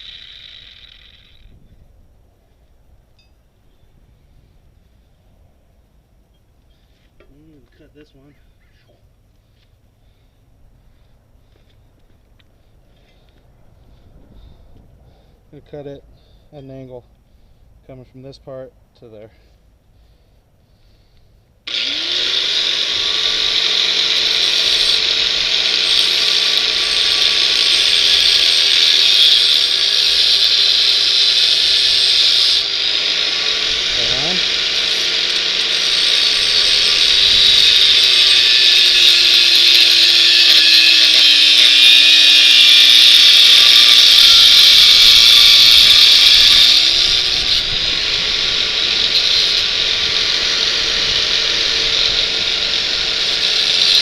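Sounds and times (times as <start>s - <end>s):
power tool cutting steel tube: 0.0s - 1.6s, 21.7s - 54.0s.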